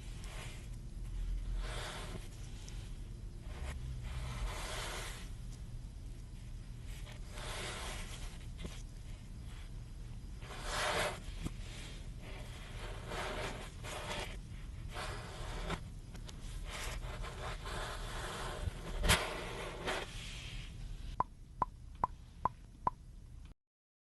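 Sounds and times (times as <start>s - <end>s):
knife scraping kinetic sand: 0.0s - 5.3s, 7.0s - 8.8s, 10.4s - 15.9s, 16.5s - 20.7s.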